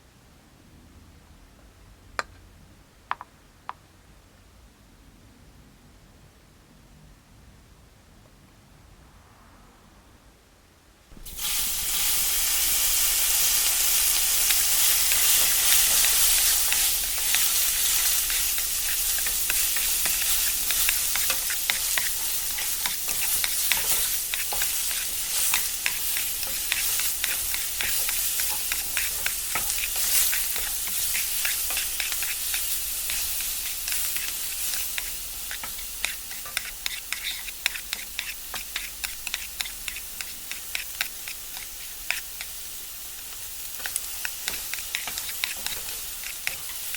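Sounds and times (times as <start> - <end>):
slime crackling as stirred: 14.4 - 42.5.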